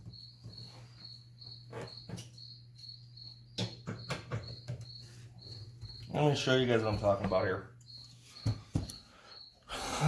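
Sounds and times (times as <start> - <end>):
cricket chirping: 0.0 - 10.0.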